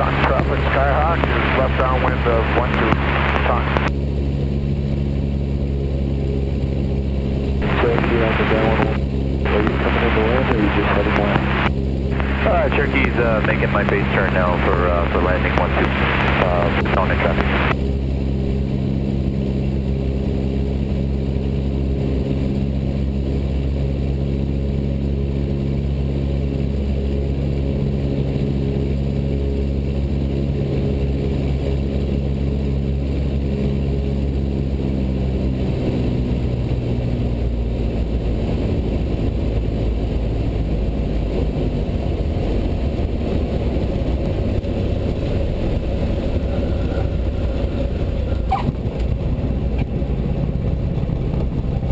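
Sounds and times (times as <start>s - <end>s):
propeller aircraft engine drone: 0.0s - 51.9s.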